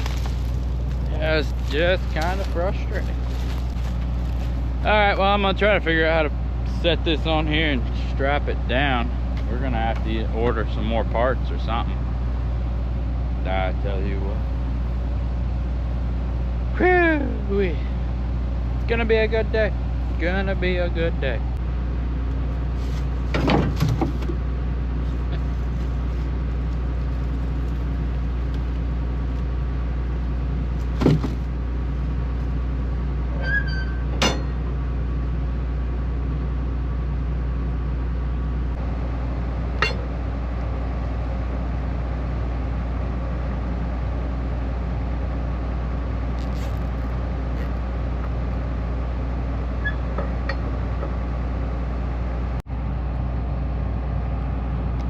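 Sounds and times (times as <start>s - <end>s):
combine engine droning: 0.0s - 55.0s
sharp knocks and clinks: 39.8s - 40.1s.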